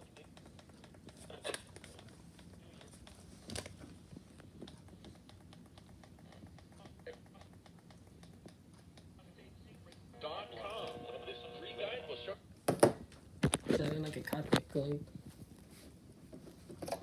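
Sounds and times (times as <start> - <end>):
faint clicks and rustling: 0.0 - 9.2.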